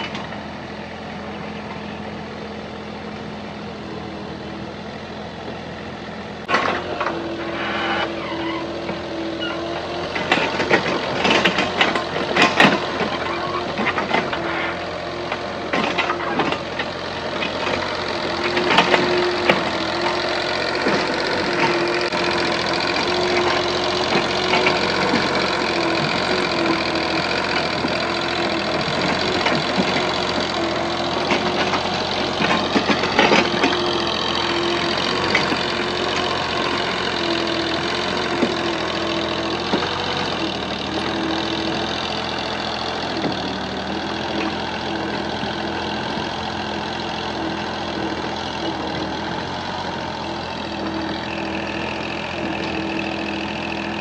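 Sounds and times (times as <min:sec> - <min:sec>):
engine running steadily: 0:00.0 - 0:54.0
clatters: 0:09.6 - 0:46.9.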